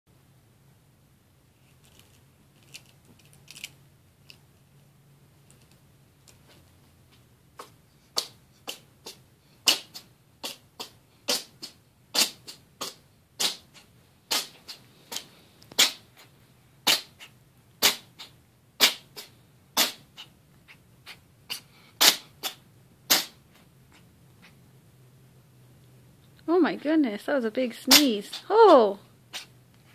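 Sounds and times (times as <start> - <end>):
cat sneezing: 7.6 - 24.6, 29.3 - 29.6.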